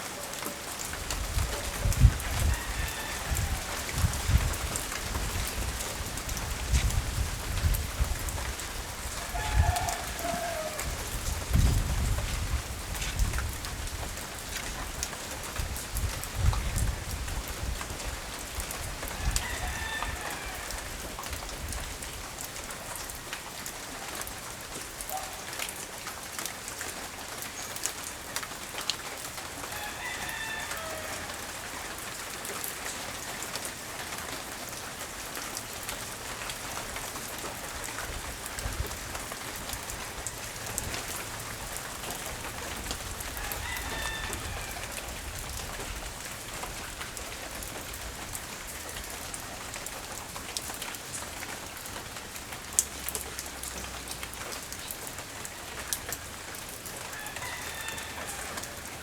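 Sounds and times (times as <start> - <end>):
steady rain falling: 0.0 - 59.0
wind gusting on microphone: 1.0 - 22.3
rooster crowing: 2.2 - 4.2, 9.1 - 11.2, 19.1 - 21.0, 29.6 - 31.9, 43.3 - 45.2, 57.1 - 59.0.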